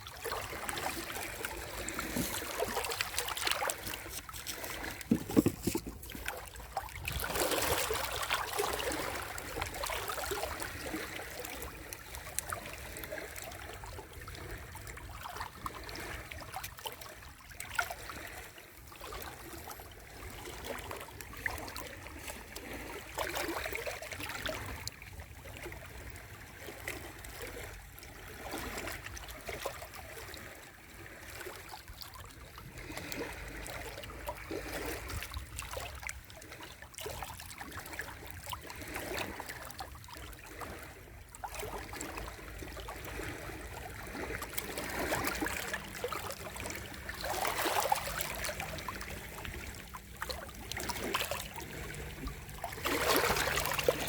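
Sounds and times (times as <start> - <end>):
water trickling: 0.0 - 24.9, 40.7 - 54.0
small waves washing ashore: 0.0 - 54.0.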